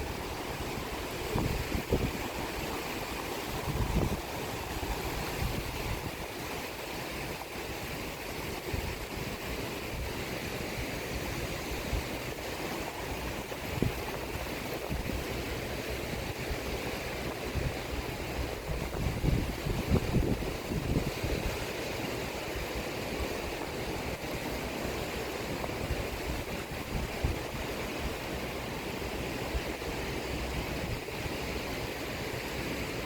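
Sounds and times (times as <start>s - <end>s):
sea waves washing on shore: 0.0s - 33.0s
wind buffeting microphone: 0.0s - 33.0s.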